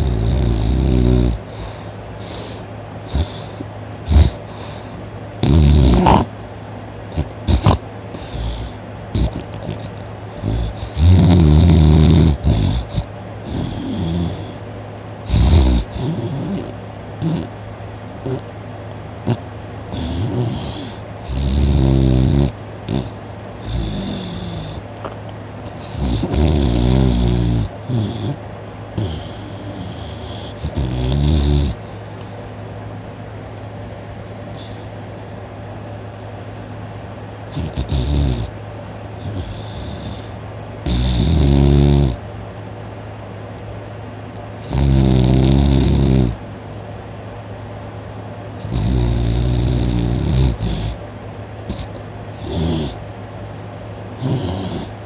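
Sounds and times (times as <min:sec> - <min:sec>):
person snoring loudly: 0:00.0 - 0:06.3, 0:07.1 - 0:14.6, 0:15.2 - 0:17.5, 0:18.2 - 0:18.4, 0:19.3 - 0:24.8, 0:25.7 - 0:28.4, 0:29.0 - 0:31.8, 0:37.5 - 0:38.5, 0:39.2 - 0:42.2, 0:44.6 - 0:46.4, 0:48.6 - 0:51.0, 0:51.7 - 0:53.0, 0:54.2 - 0:55.0.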